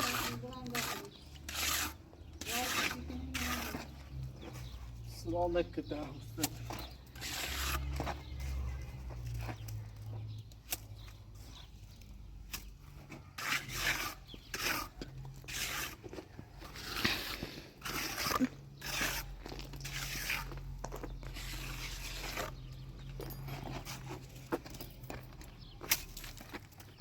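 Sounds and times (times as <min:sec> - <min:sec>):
scraping strokes: 0:00.0 - 0:05.1, 0:06.4 - 0:09.8, 0:12.5 - 0:22.8.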